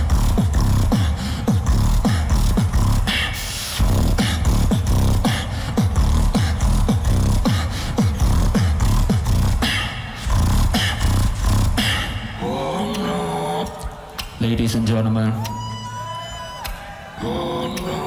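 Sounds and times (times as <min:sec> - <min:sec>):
beatboxed kick drum: 0:00.0 - 0:13.1
beatboxed hissy snare: 0:00.0 - 0:13.2
beatboxed low bass: 0:00.0 - 0:14.6.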